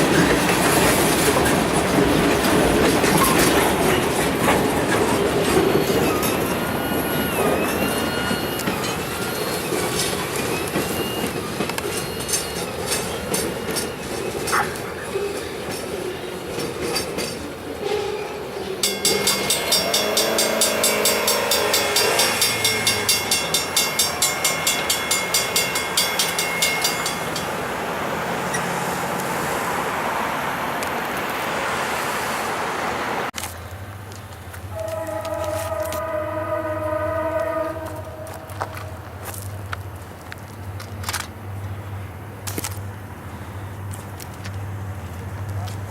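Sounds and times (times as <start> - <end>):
train wheels clattering on rails: 0.0 - 29.3, 34.1 - 41.8
crossing signal bell ringing: 5.6 - 14.6, 18.8 - 27.8, 34.7 - 39.4.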